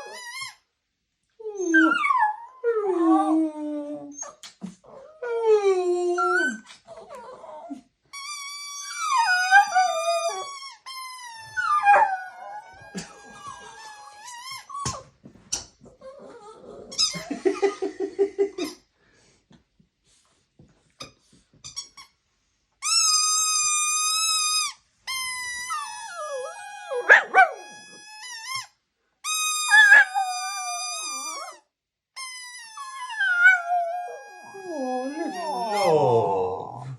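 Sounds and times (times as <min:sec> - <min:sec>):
squeaky dog toy squealing: 0:00.0 - 0:00.6, 0:08.1 - 0:15.1, 0:16.8 - 0:17.3, 0:22.8 - 0:31.6, 0:32.2 - 0:36.2
dog howling: 0:33.0 - 0:36.9.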